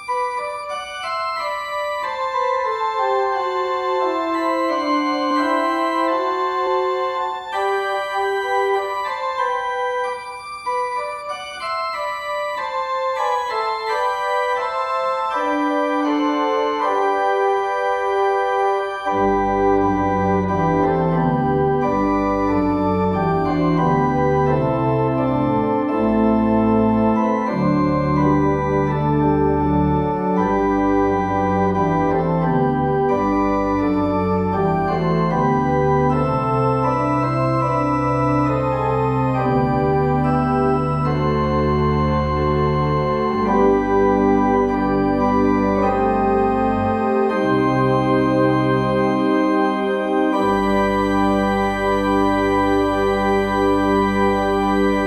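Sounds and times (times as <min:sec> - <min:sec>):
organ chords: 0:00.0 - 0:55.0
deep organ bass notes: 0:18.1 - 0:55.0.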